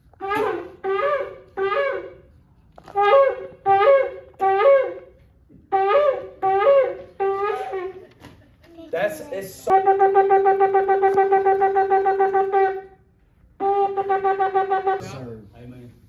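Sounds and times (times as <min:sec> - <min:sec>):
two-note horn blasts: 0:00.2 - 0:02.2, 0:02.9 - 0:07.7, 0:09.7 - 0:13.0, 0:13.6 - 0:15.4.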